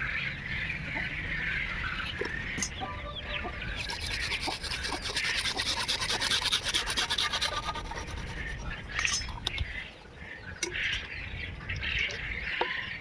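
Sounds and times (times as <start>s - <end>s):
sharp scrapes: 2.6s - 9.5s
hand tool rasping pvc pipe: 3.4s - 9.5s.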